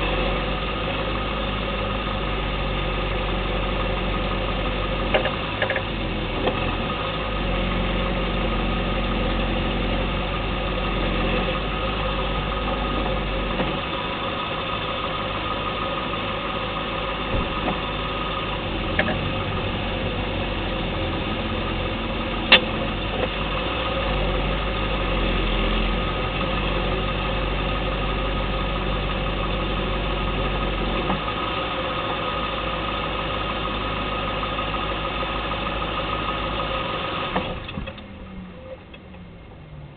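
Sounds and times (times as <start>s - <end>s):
car engine running: 0.0s - 39.9s
sharp clicks from car suspension: 5.1s - 6.8s, 18.9s - 19.2s, 22.5s - 23.4s, 37.3s - 39.3s.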